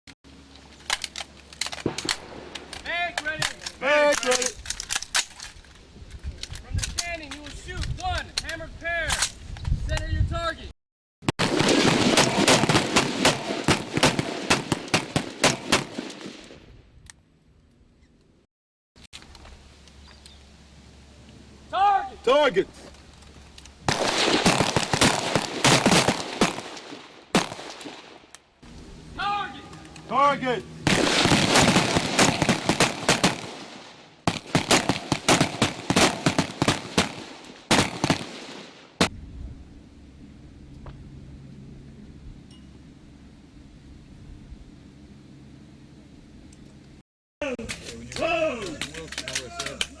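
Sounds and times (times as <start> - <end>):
rifle shots with echo: 11.4 - 16.6, 23.9 - 28.2, 30.9 - 39.1.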